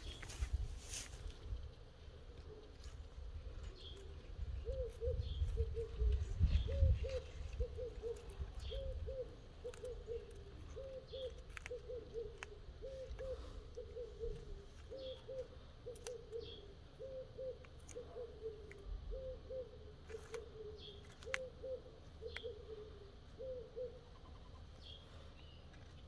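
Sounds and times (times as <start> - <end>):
bird hooting: 4.5 - 25.0.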